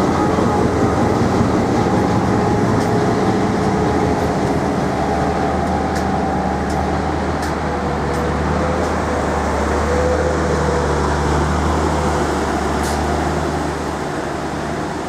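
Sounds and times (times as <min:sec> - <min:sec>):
locomotive engine drone: 0:00.0 - 0:15.0
train rolling noise: 0:00.0 - 0:15.0.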